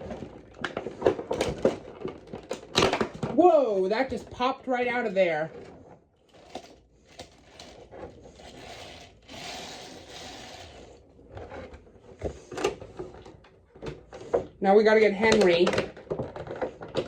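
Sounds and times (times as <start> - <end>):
toy packaging scraping: 4.1 - 13.3.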